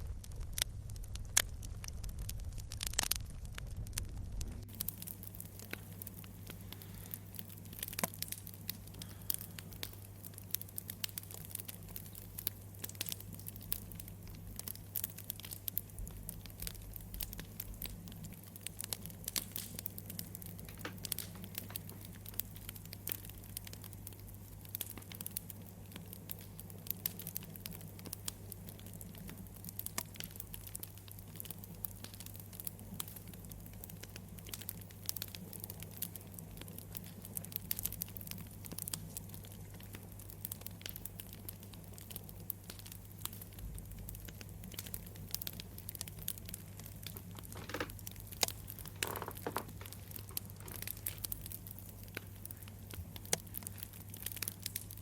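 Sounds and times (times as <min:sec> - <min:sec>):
steady low hum: 0:00.0 - 0:29.9
wood fire crackling: 0:00.0 - 0:55.0.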